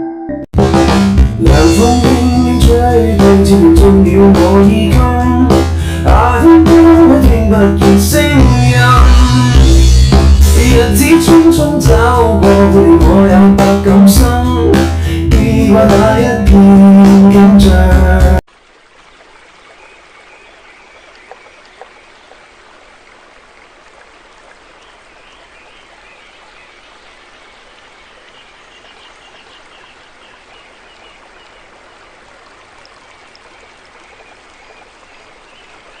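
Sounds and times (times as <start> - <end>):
faint clicks: 21.0 - 22.4.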